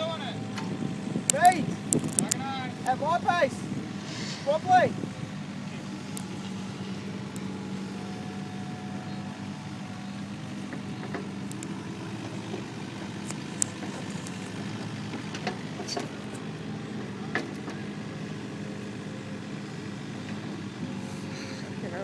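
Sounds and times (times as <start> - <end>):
heavy machinery engine running: 0.0 - 22.0
faint clicks and knocks: 1.3 - 2.4, 10.7 - 16.1.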